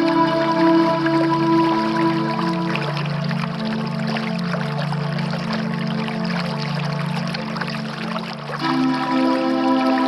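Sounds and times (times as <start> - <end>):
slow music of held chords: 0.0 - 10.0
waterfall rushing: 8.6 - 10.0.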